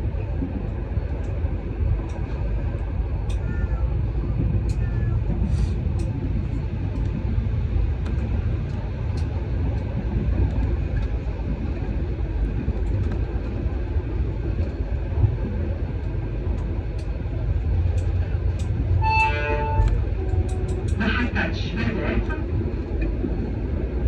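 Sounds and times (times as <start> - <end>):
moving vehicle rumble: 0.0 - 24.0
faint ticks: 17.9 - 18.8.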